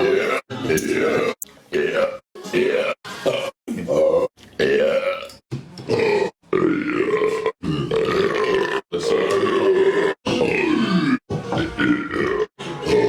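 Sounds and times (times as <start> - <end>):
person burping: 3.2 - 13.0.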